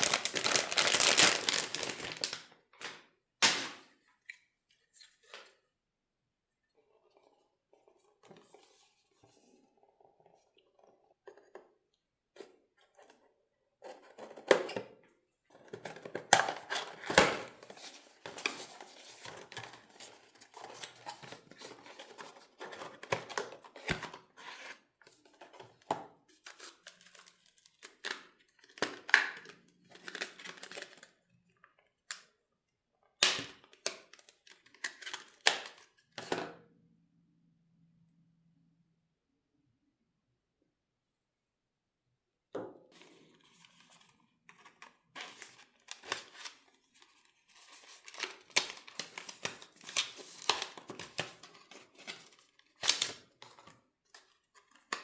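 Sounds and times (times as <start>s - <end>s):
packaging tearing and crinkling: 0.0s - 2.5s, 47.7s - 53.2s.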